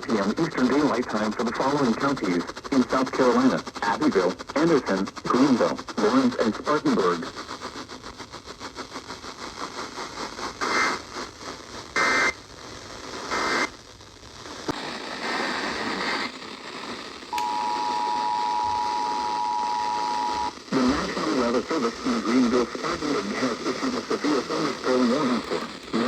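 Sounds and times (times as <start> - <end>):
radio hiss: 0.0 - 26.0
two-tone attention alarm: 17.3 - 20.6.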